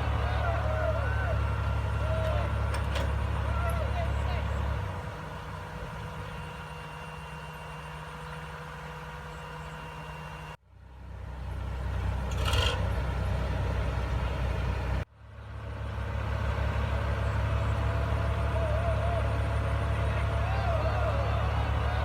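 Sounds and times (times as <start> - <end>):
diesel engine droning: 0.0 - 22.0.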